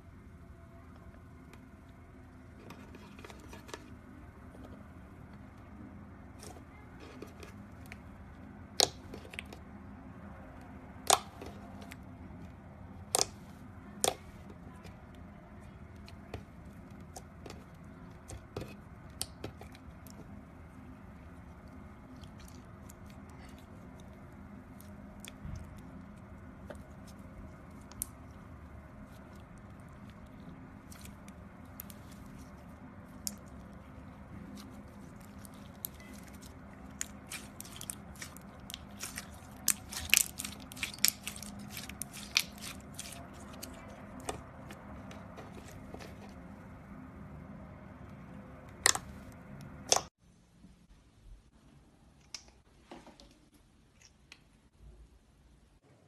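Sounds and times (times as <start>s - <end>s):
slime crackling and popping: 34.5s - 44.3s.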